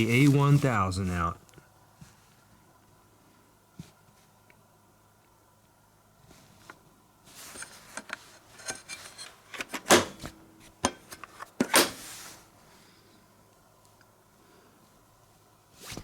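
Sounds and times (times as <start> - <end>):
rustling and rubbing handling noises: 0.0 - 2.8, 3.7 - 4.5, 6.2 - 9.6, 10.2 - 12.8, 15.6 - 16.0.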